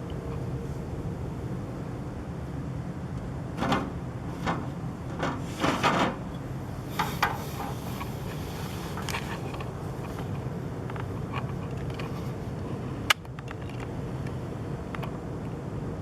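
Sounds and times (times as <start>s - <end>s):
steady low hum: 0.0s - 16.0s
knocks and scrapes: 3.6s - 6.2s.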